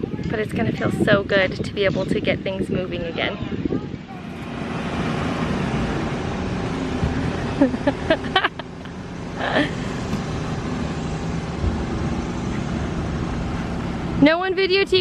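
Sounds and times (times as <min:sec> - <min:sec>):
skid steer engine running: 0:04.0 - 0:15.0.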